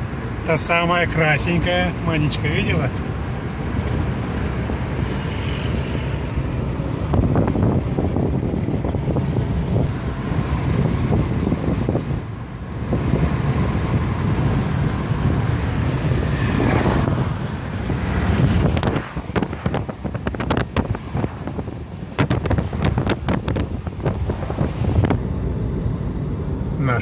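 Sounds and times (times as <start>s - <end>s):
car driving rumble: 0.0s - 27.0s
wind buffeting microphone: 6.1s - 26.6s.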